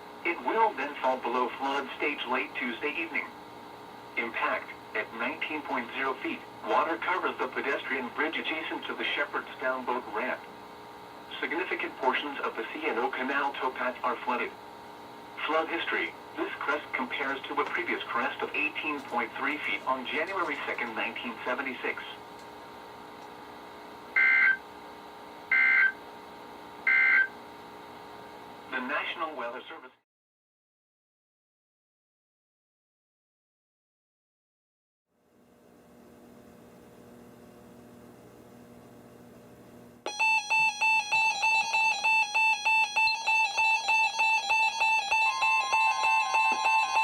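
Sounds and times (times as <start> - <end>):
faint radio hiss and hum: 0.0 - 30.0, 35.3 - 40.1
pulsing electronic alarm beeps: 24.2 - 24.6, 25.5 - 26.0, 26.9 - 27.3, 40.1 - 47.0
two-tone digital warble: 40.1 - 47.0.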